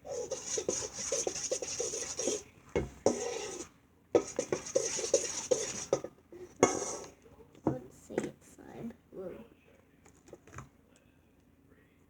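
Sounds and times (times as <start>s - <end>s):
utensil stirring slime in bowl: 0.0s - 8.5s.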